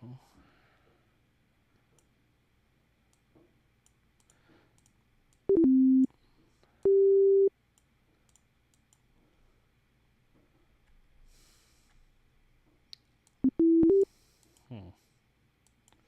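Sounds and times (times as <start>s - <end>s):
faint clicks: 3.1s - 5.4s, 15.6s - 16.0s.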